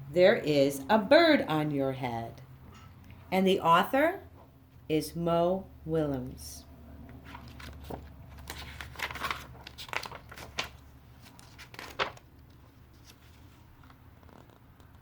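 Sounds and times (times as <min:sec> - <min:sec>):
book pages rustling: 0:07.1 - 0:15.0.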